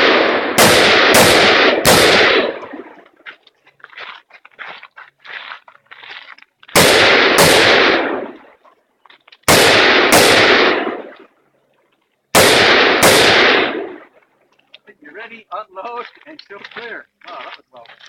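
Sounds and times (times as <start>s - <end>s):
rifle shots echoing: 0.0s - 3.0s, 6.7s - 8.6s, 9.4s - 11.3s, 12.3s - 14.2s.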